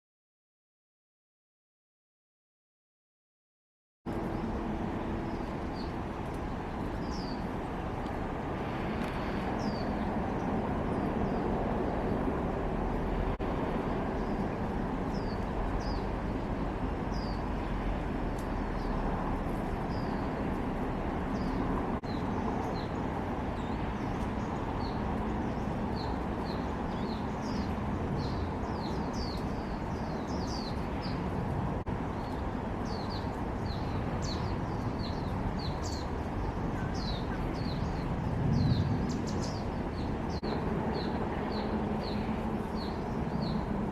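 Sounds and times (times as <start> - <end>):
songbird chirping: 4.1 - 8.2, 23.6 - 31.4
distant traffic hum: 4.1 - 43.9.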